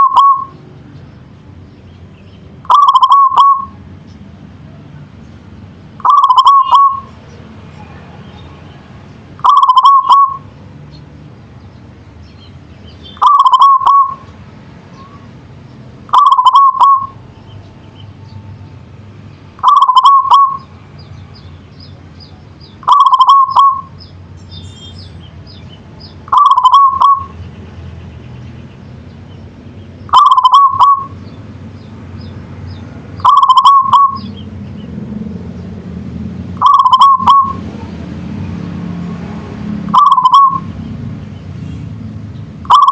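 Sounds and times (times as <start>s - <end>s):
dove cooing: 0.0s - 0.6s, 2.7s - 3.8s, 6.0s - 7.1s, 9.4s - 10.4s, 13.2s - 14.3s, 16.1s - 17.2s, 19.6s - 20.7s, 22.8s - 23.9s, 26.3s - 27.3s, 30.1s - 31.2s, 33.2s - 34.4s, 36.6s - 37.9s, 39.9s - 40.7s, 42.7s - 42.9s
faint high bird chirps: 6.0s - 7.2s, 12.3s - 14.3s, 19.6s - 27.5s, 30.0s - 31.9s, 32.7s - 34.8s.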